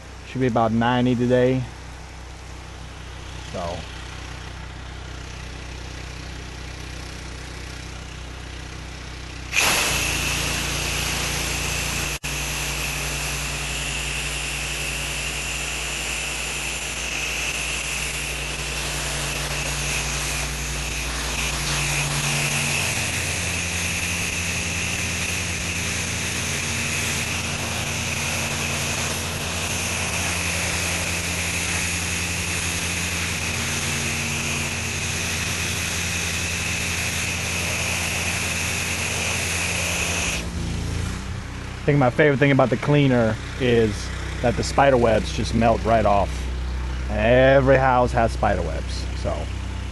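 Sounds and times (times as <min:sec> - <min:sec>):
pressure washer engine running: 0:00.0 - 0:49.9
hissing water spray: 0:09.5 - 0:40.6.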